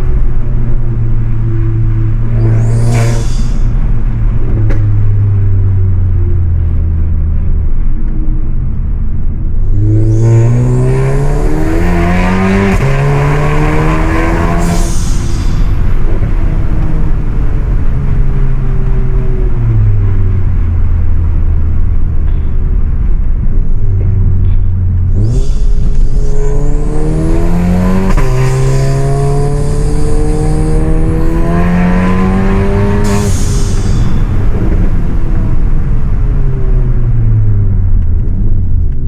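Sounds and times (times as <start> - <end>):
car engine accelerating: 0.0 - 39.0.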